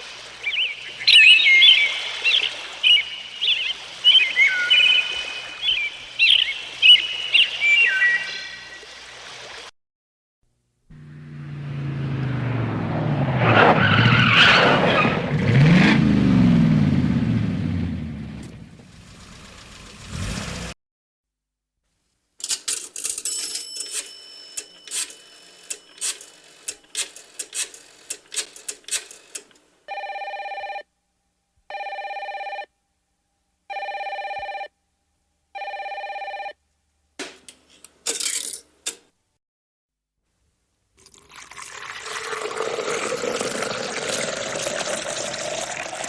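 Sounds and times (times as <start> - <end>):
telephone ringing tone: 29.9 - 30.9, 31.7 - 32.7, 33.7 - 34.8, 35.6 - 36.6.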